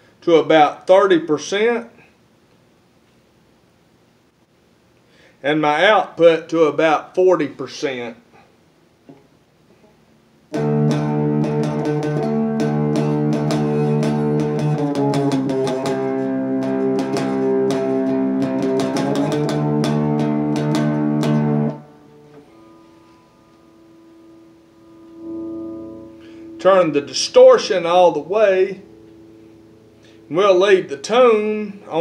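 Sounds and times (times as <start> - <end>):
distorted electric guitar chords: 10.5 - 32.0.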